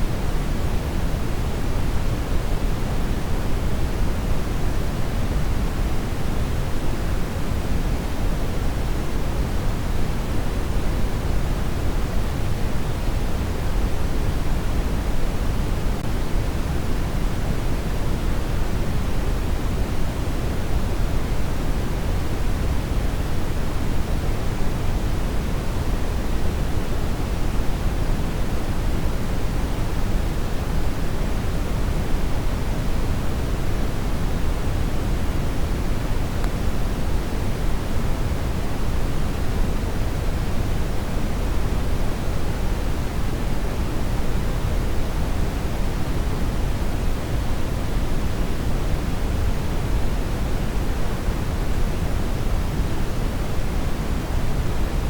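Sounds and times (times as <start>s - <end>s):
steady pink noise: 0.0s - 55.0s.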